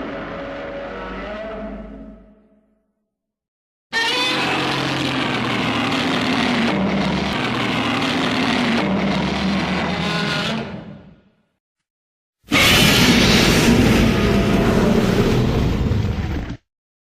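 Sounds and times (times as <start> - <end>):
harsh low monster roar: 12.5 - 16.4.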